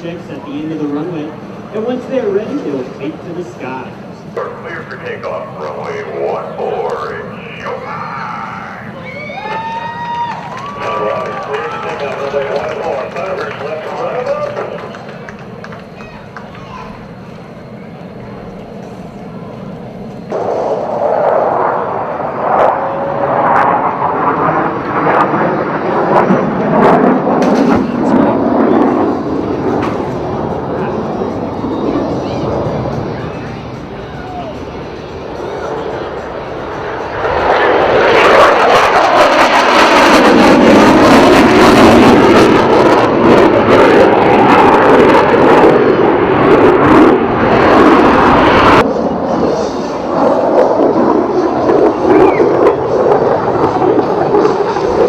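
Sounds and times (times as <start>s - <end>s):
jet roar with crackling: 0.0s - 55.0s.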